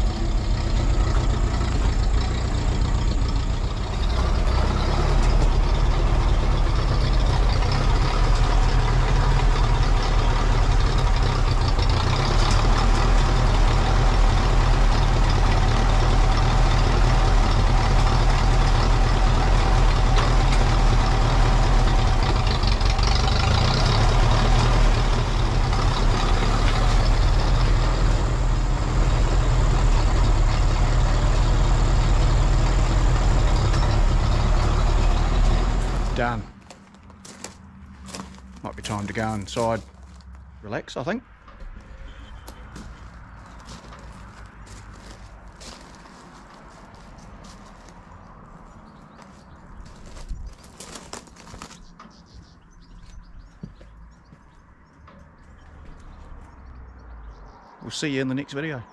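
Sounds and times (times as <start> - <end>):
tractor engine running: 0.0 - 58.7.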